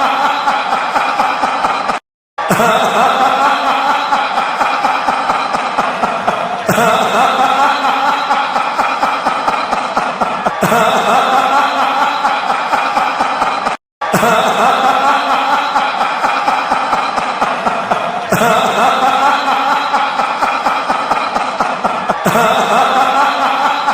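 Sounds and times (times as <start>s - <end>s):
laughing sound effect: 0.0s - 23.9s.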